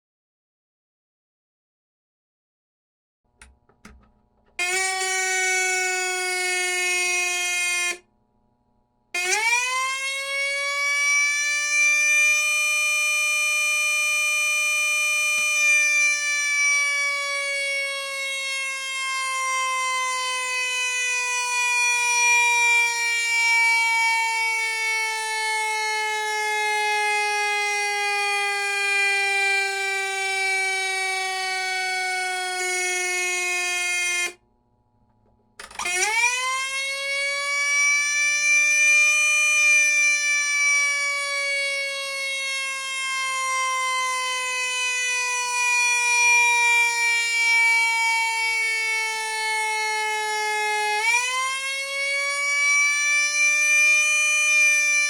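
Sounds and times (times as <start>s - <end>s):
siren whine winding up and down: 4.6s - 8.1s, 9.2s - 34.4s, 35.6s - 55.0s.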